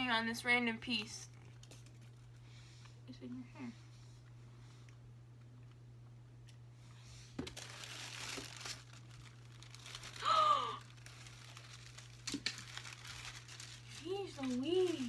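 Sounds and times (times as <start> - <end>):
packaging crinkling and rustling: 7.3 - 15.0
person gasping ooh: 10.1 - 10.9.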